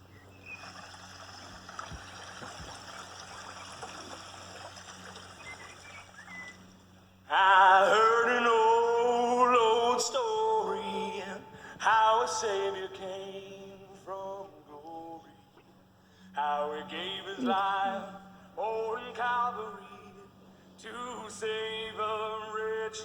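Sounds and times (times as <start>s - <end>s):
background hiss: 0.0s - 23.0s
person singing a hymn unaccompanied: 7.2s - 15.7s, 16.3s - 23.0s.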